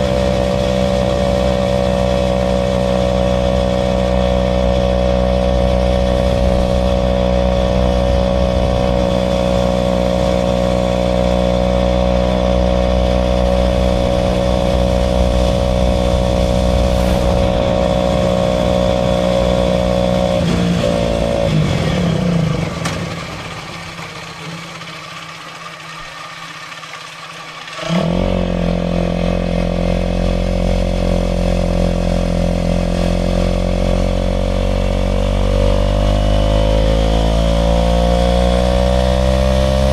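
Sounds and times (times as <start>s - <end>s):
motorcycle engine running: 0.0s - 24.7s.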